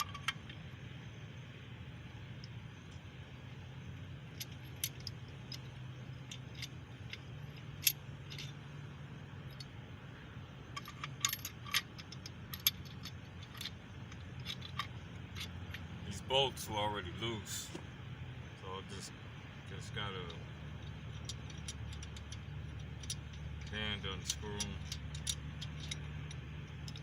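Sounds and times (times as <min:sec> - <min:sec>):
metal clinks and taps: 0:00.0 - 0:00.6, 0:04.3 - 0:08.7, 0:10.7 - 0:16.0, 0:20.0 - 0:27.0
low hum: 0:00.0 - 0:27.0.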